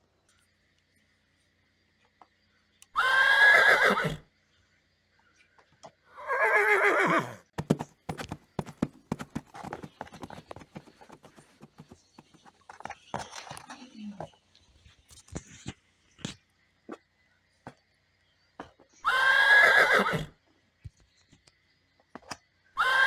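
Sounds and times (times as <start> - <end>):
horse whinnying: 3.0 - 4.2, 6.2 - 11.9, 19.0 - 20.3, 22.8 - 23.0
hoofbeats clip-clopping: 6.9 - 13.6.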